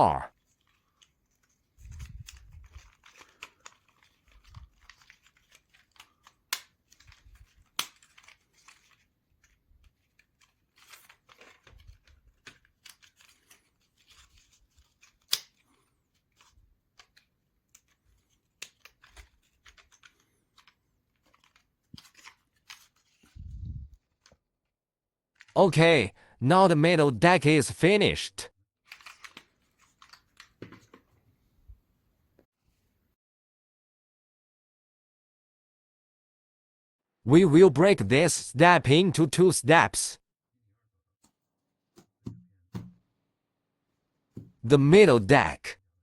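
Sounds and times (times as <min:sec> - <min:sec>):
sharp clicks of pieces: 0:02.2 - 0:09.0, 0:14.9 - 0:15.8.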